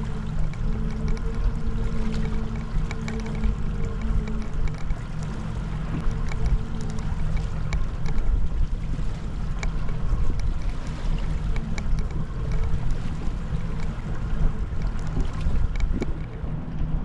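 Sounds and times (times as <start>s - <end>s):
boat engine humming: 0.0s - 17.0s
faint ticks: 0.0s - 17.0s
wind buffeting microphone: 0.0s - 17.0s.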